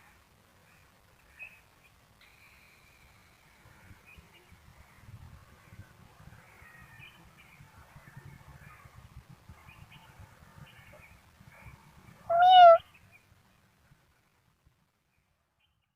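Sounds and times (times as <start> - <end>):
kitten squeaks and mews: 12.3 - 12.8.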